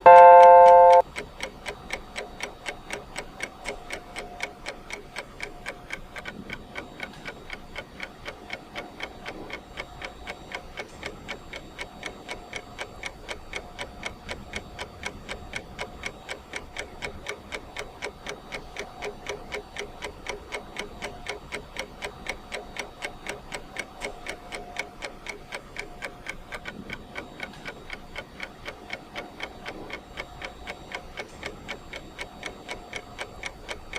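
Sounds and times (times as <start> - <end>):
loud beep: 0.0 - 1.0
countdown timer ticking: 0.0 - 1.1.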